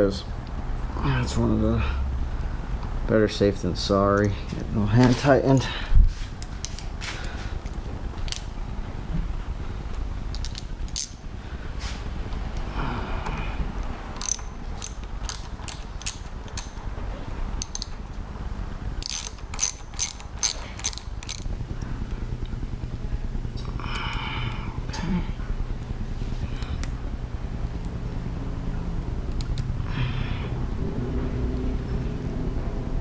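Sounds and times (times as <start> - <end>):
ratchet wrench clicking: 10.3 - 11.2, 14.1 - 16.9, 17.6 - 18.1, 19.0 - 21.5.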